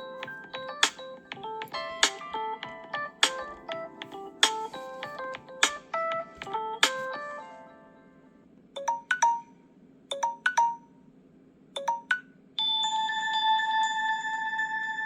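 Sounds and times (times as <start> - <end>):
phone ringtones playing: 11.8 - 15.0.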